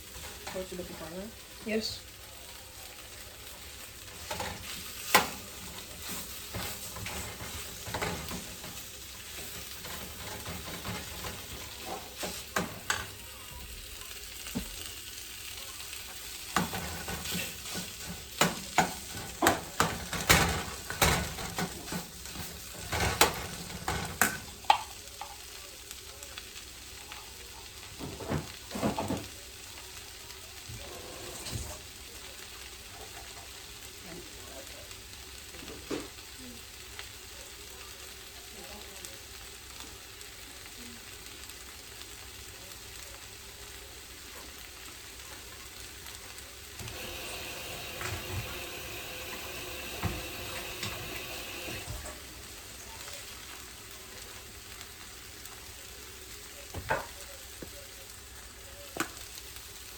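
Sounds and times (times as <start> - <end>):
food sizzling in a frying pan: 0.0 - 59.9
utensil scraping against pan: 4.2 - 13.0.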